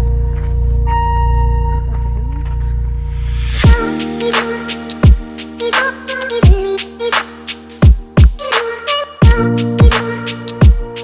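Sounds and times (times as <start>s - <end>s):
light percussion hits: 3.3s - 11.0s
deep bass kick: 3.4s - 4.0s, 5.0s - 5.4s, 6.4s - 6.8s, 7.8s - 8.4s, 9.2s - 10.0s, 10.6s - 10.9s.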